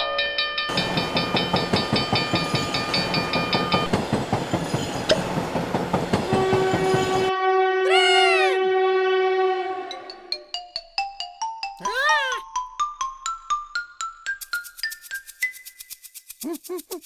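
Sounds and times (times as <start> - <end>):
cartoon train chugging: 0.7 - 7.3, 7.9 - 8.6, 16.2 - 17.0
train horn chord: 6.2 - 10.3.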